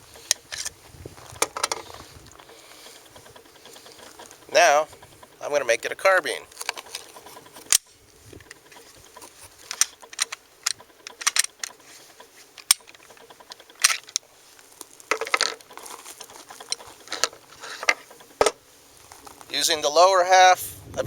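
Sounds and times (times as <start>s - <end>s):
metallic clicks of pistol handling: 7.7s - 11.9s.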